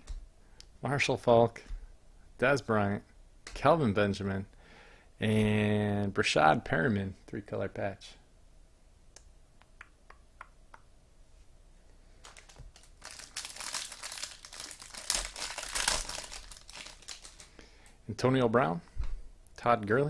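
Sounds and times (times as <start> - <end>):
wrapper crinkling and tearing: 12.2 - 17.6.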